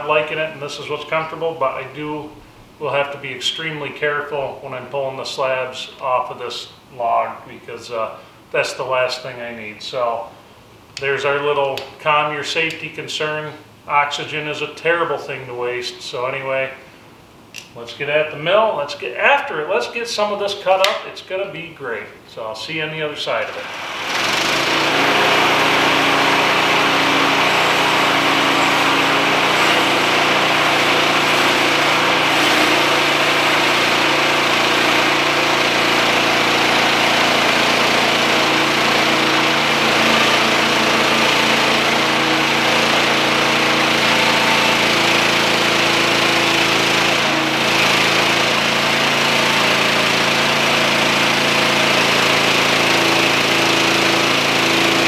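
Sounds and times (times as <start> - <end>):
band sawmill cutting a log: 23.3 - 55.0.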